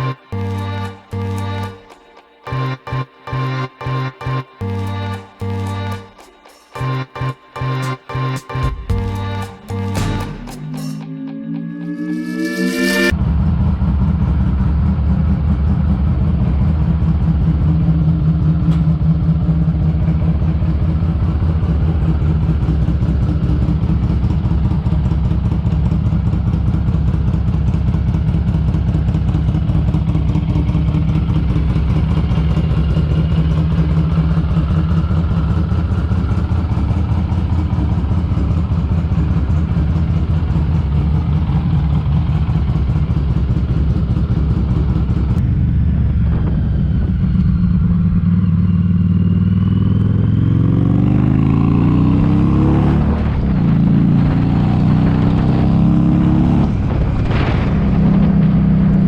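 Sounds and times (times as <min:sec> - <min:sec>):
motorcycle engine at riding speed: 0:13.1 - 0:59.0.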